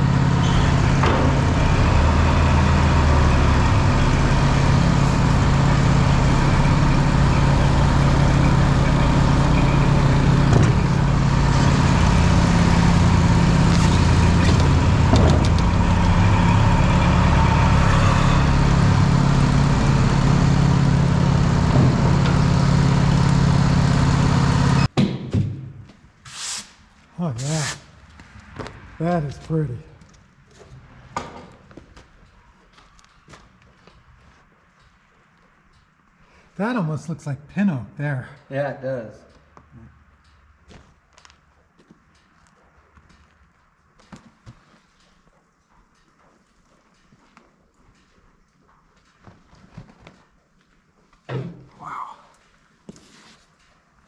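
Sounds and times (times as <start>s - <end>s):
bandsaw sawmill cutting log: 0.0s - 24.9s.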